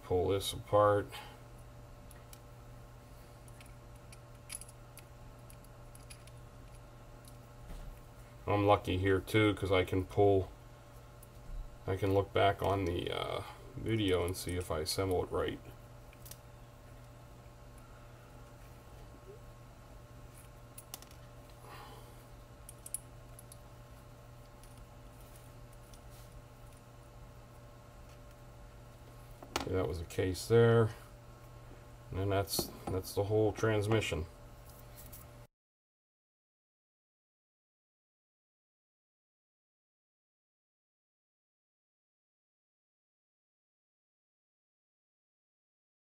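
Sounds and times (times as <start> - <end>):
steady low hum: 0.0 - 35.5
small parts clicking and tapping: 3.4 - 7.5, 20.3 - 21.6, 22.6 - 23.6, 24.4 - 26.8.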